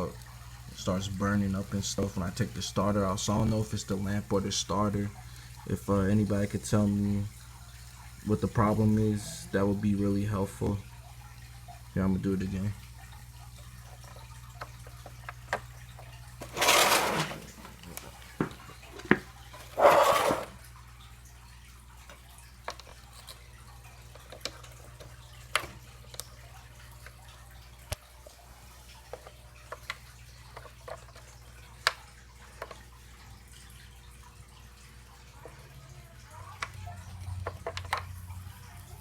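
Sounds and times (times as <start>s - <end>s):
fluorescent lamp humming: 0.0s - 39.0s
small clicks and ticks: 12.6s - 16.5s, 22.0s - 33.9s, 35.3s - 39.0s
scraping and rustling: 16.4s - 20.6s.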